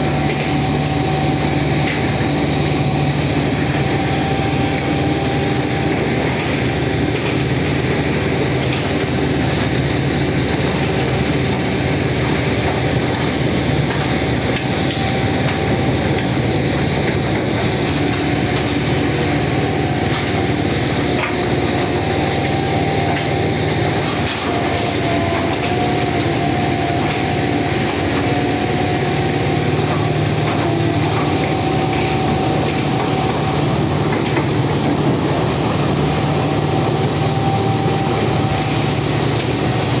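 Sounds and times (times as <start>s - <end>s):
diesel engine droning: 0.0s - 40.0s.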